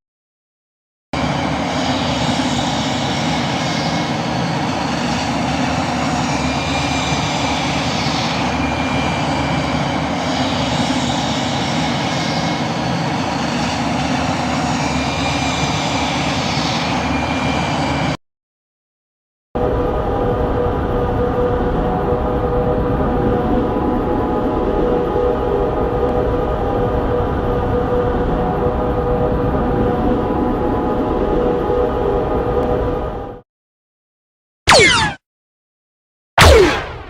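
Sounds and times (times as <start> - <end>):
faint high whine: 34.7 - 35.2.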